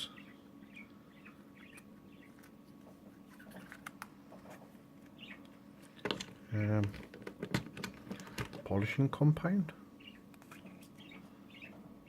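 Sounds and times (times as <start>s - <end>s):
low background hum: 0.0s - 12.0s
plastic pieces clicking and rustling: 6.0s - 8.6s.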